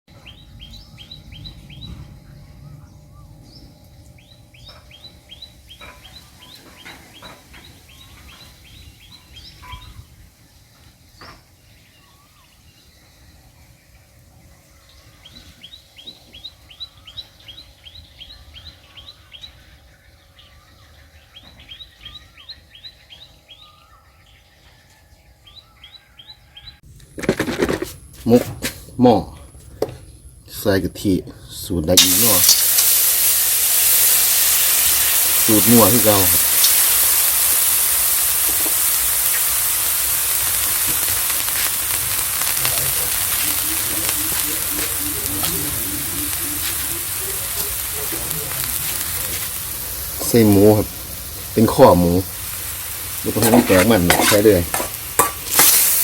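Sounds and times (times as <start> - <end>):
bird chirping: 0.1 - 10.1, 11.1 - 26.8, 32.0 - 56.0
faint outdoor rumble: 0.2 - 7.0, 38.9 - 55.8.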